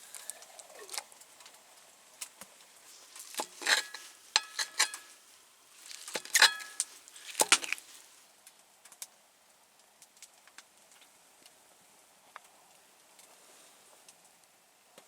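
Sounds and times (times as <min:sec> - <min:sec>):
utensil clinking on metal pan: 0:03.4 - 0:05.2, 0:06.1 - 0:07.8.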